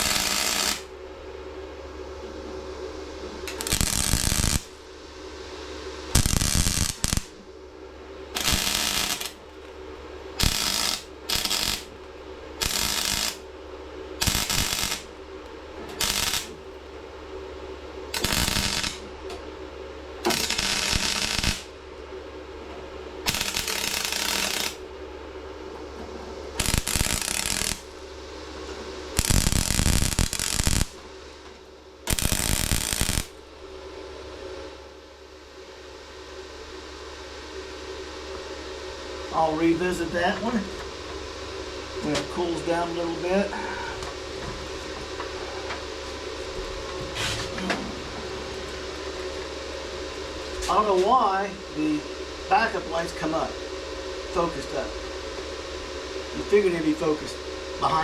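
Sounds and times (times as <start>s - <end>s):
welder arc crackle: 0.0s - 0.9s, 3.3s - 5.0s, 6.0s - 7.5s, 8.3s - 17.3s, 18.1s - 19.4s, 20.1s - 21.9s, 23.2s - 24.9s, 26.5s - 33.6s
steady low hum: 0.0s - 58.0s.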